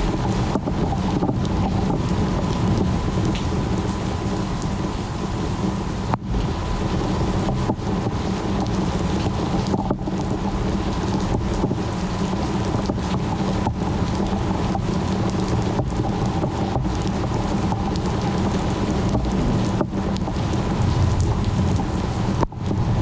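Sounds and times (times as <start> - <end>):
low rumble of thunder: 0.0 - 11.7, 17.9 - 23.0
heavy rain: 0.0 - 23.0.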